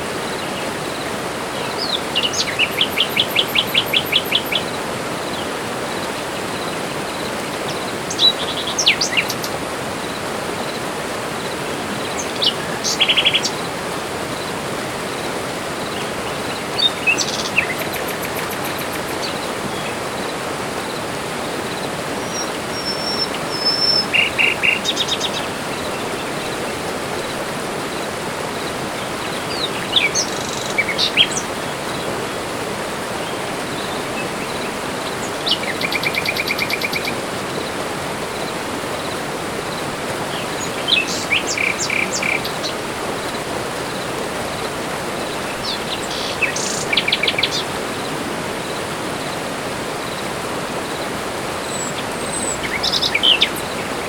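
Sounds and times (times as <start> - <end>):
birds chirping: 0.3 - 5.5, 15.9 - 27.3, 40.2 - 49.4, 50.0 - 54.0.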